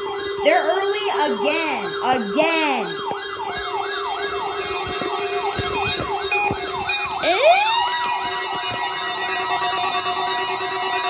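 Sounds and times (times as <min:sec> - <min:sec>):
rising steady alarm tone: 0:00.0 - 0:11.0
weather alert radio wailing alarm: 0:00.0 - 0:11.0.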